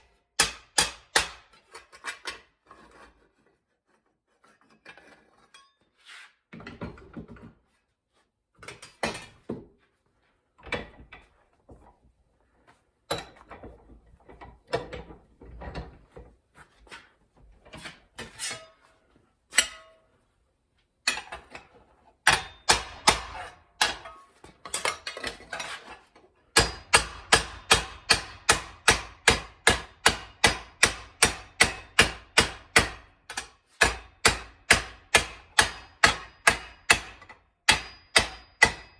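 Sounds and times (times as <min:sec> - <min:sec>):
metallic clanks of hand tools: 0:04.9 - 0:05.9, 0:19.5 - 0:20.0, 0:22.3 - 0:28.4.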